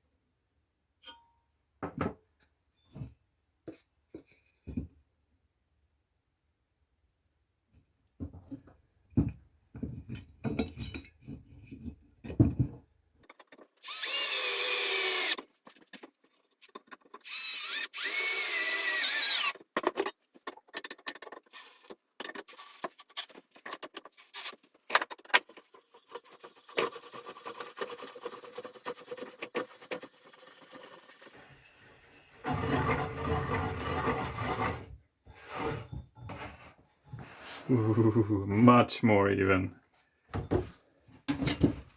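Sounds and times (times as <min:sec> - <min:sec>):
knocks and clatter of wood and tools: 0:01.8 - 0:05.0, 0:08.2 - 0:13.8, 0:19.6 - 0:25.8, 0:32.5 - 0:37.5, 0:40.3 - 0:41.9
power drill whining: 0:13.8 - 0:15.4, 0:17.2 - 0:19.6.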